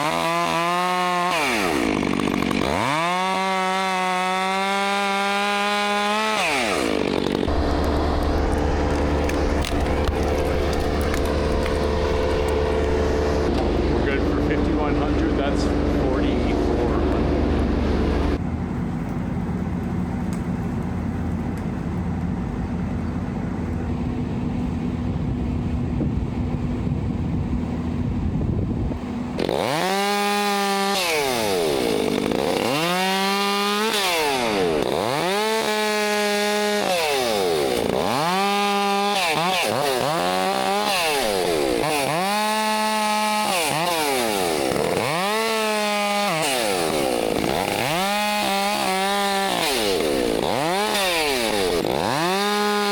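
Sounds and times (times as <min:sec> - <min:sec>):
chainsaw revving: 0:00.0 - 0:18.4, 0:29.4 - 0:52.9
machine hum: 0:07.5 - 0:18.4.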